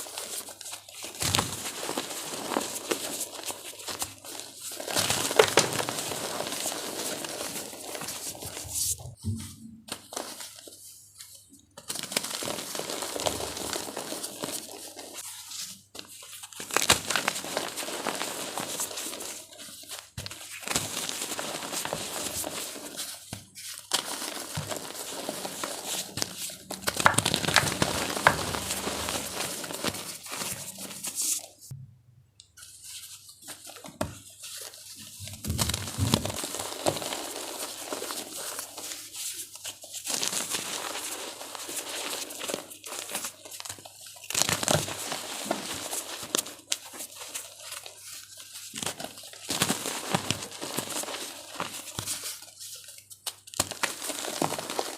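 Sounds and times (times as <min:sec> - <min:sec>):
chalk being crushed: 0:23.8 - 0:31.5.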